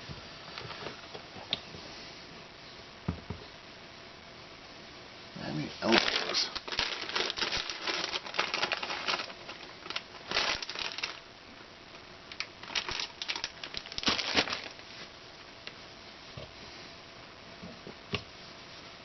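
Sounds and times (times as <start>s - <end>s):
hands rustling plastic parts: 5.8s - 11.3s, 12.3s - 15.1s.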